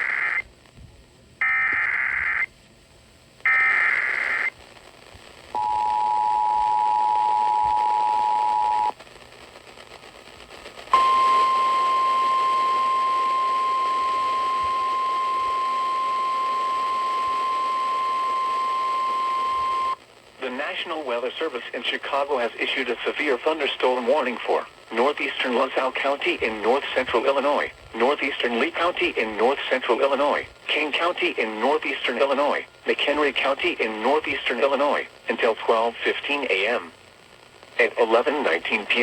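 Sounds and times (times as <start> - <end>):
steady warning alarm tone: 11.0 - 20.0.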